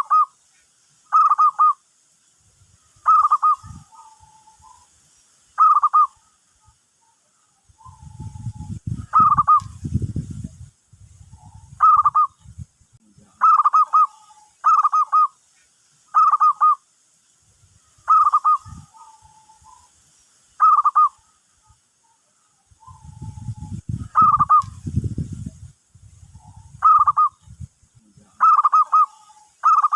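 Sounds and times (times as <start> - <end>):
dove cooing: 1.1 - 1.8, 3.0 - 4.8, 5.6 - 6.3, 7.8 - 9.7, 11.3 - 12.4, 13.4 - 15.3, 16.2 - 16.8, 18.1 - 19.8, 20.6 - 21.3, 22.8 - 24.7, 26.4 - 27.4, 28.4 - 29.9.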